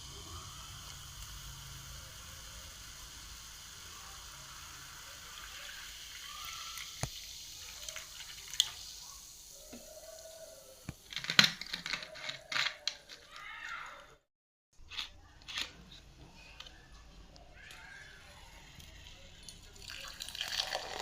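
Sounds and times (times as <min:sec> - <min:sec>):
cola fizzing: 0:00.0 - 0:12.0, 0:18.0 - 0:21.0
sharp clicks and crackles: 0:10.9 - 0:13.4.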